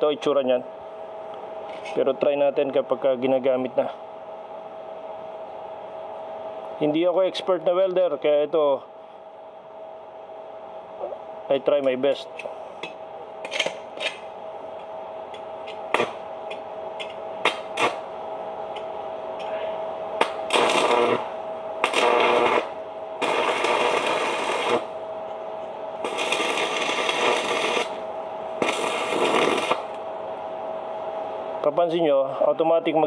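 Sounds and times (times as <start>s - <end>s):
welding electrode taps and scratches: 12.4s - 18.1s, 20.2s - 24.9s, 26.0s - 28.0s, 28.6s - 30.0s
welding arc crackling and sizzling: 13.5s - 30.4s.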